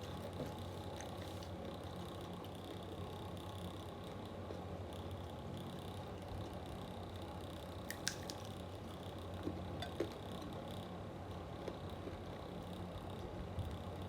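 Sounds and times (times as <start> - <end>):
electric fan humming: 0.0 - 11.3
chewing clicks and squishes: 7.8 - 8.7.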